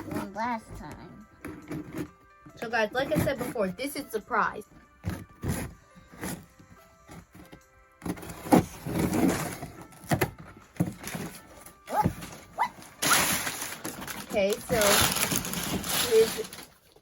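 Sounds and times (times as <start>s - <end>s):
faint music: 0.0s - 17.0s.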